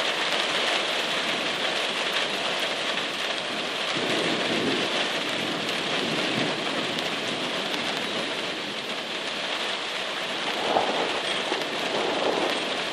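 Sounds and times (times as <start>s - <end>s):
heavy rain falling: 0.0s - 12.9s
thunder rumbling: 3.5s - 9.5s, 10.2s - 12.9s.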